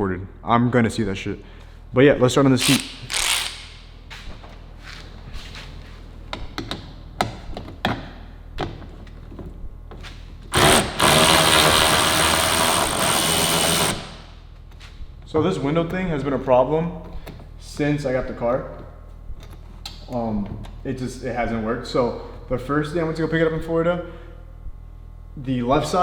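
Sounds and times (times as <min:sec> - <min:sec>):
power tool running: 0:02.6 - 0:03.8, 0:10.5 - 0:14.4
tools clicking and knocking: 0:19.4 - 0:20.8.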